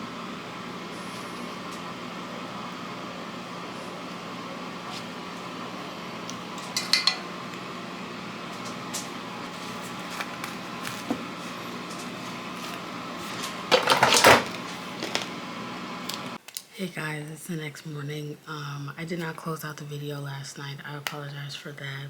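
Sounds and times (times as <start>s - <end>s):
steady hum: 0.0s - 16.4s
dishes and cutlery clattering: 6.6s - 7.3s.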